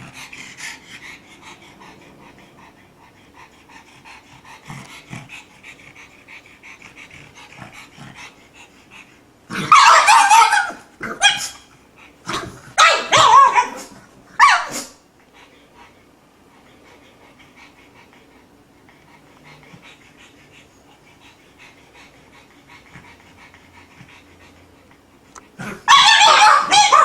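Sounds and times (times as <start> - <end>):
dog panting: 0.0 - 9.5, 15.2 - 25.7
dog barking: 9.7 - 11.6, 12.8 - 14.9, 25.9 - 27.0.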